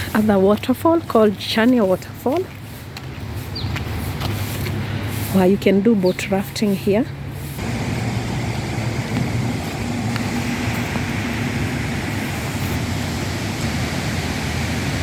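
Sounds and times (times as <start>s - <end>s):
waterfall roaring: 7.6s - 15.0s.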